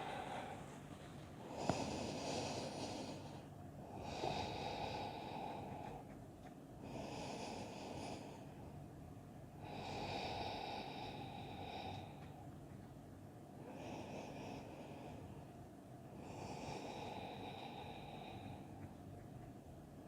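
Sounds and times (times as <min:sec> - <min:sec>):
person breathing: 0:00.0 - 0:06.1, 0:06.8 - 0:08.8, 0:09.6 - 0:12.4, 0:13.6 - 0:15.5, 0:16.2 - 0:18.9.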